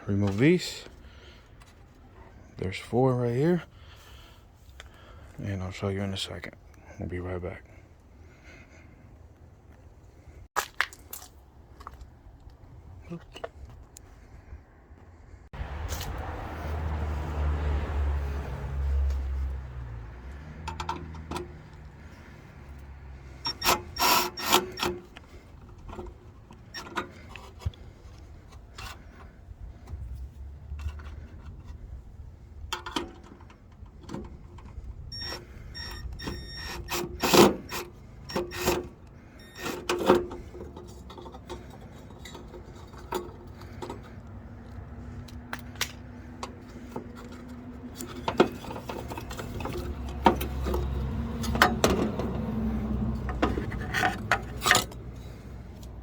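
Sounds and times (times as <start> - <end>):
hand tools knocking and scraping: 23.3 - 29.3, 35.9 - 44.2, 45.5 - 55.4.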